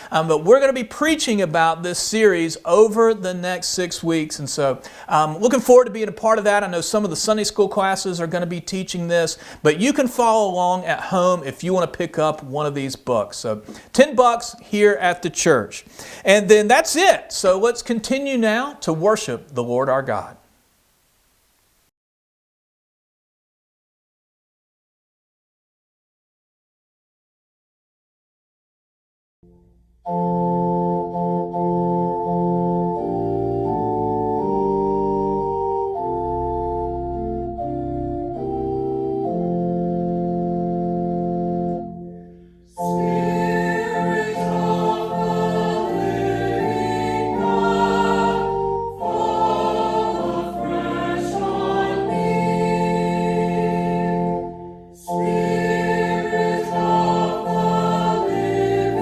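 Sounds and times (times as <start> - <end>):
organ playing held chords: 0.0 - 12.6, 29.5 - 59.0
choir singing: 42.7 - 59.0.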